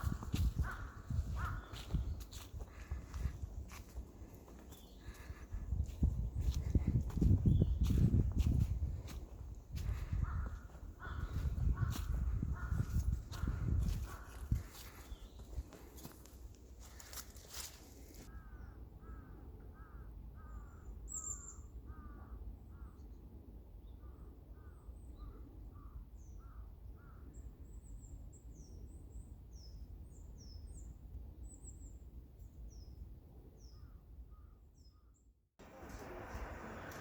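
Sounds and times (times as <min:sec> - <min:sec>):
small birds chirping: 0:00.0 - 0:16.2.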